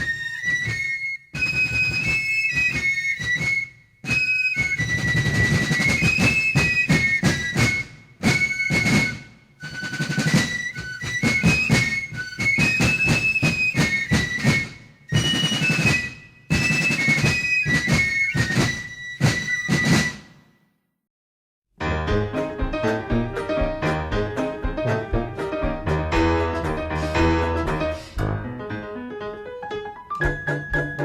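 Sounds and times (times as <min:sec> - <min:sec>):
high instrumental melody: 0:21.8 - 0:29.0
percussive beat: 0:22.0 - 0:28.6, 0:30.2 - 0:31.0.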